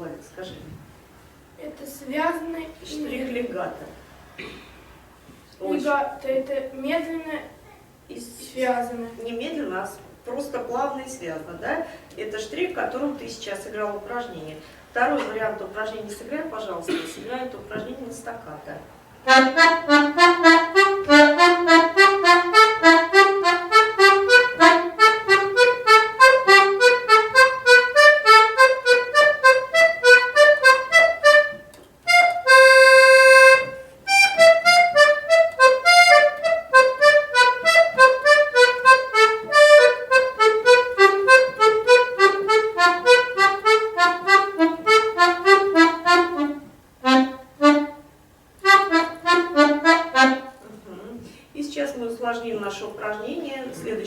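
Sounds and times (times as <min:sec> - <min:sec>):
accordion staccato notes: 0:19.2 - 0:50.6.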